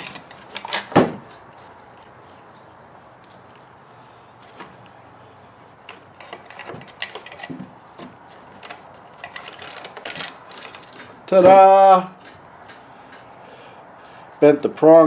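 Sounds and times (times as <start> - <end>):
plastic parts clicking and rattling: 5.8 - 11.6.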